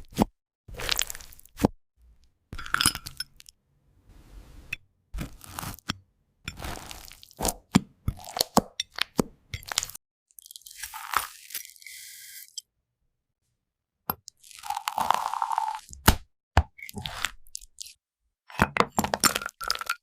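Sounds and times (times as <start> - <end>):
spoon crunching into toast: 6.5 - 7.4.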